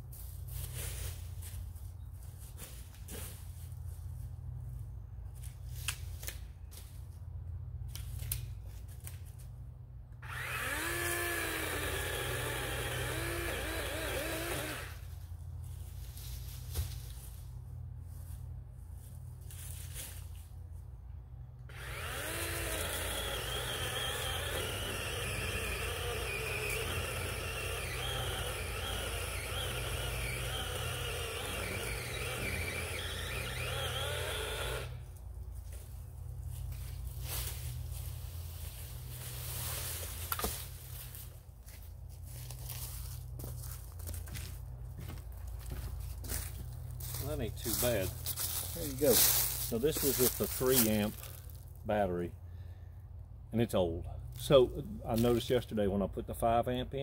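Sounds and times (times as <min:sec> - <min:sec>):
electric chainsaw cutting wood: 0:10.2 - 0:15.0, 0:21.7 - 0:35.2.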